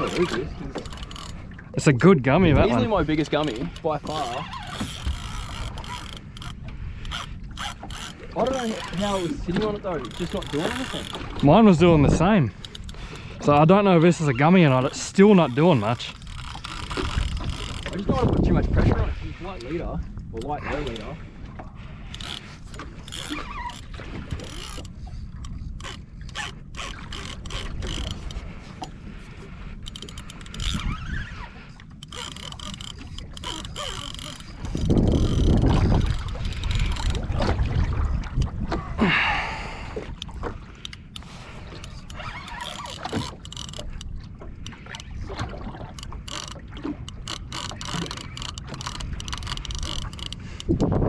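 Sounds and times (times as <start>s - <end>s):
fishing reel clicking: 0.0s - 1.4s, 3.1s - 11.3s, 12.5s - 18.5s, 22.1s - 37.2s, 40.8s - 45.2s, 45.9s - 50.9s.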